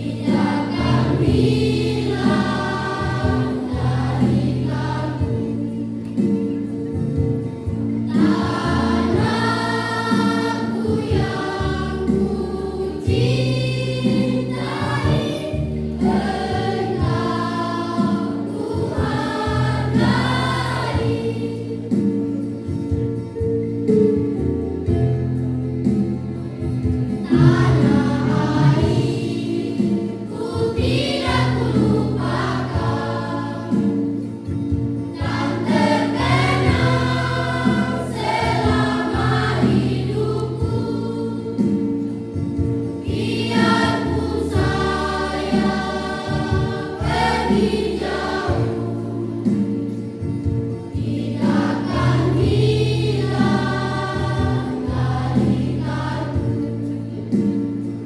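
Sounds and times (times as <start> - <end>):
choir singing: 0.0 - 5.8, 8.0 - 22.1, 27.2 - 34.4, 35.1 - 42.3, 43.0 - 50.0, 50.9 - 57.6.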